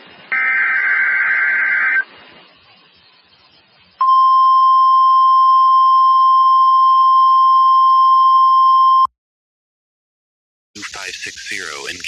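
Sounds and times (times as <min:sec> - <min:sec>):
high steady alarm beep: 0:04.0 - 0:09.1.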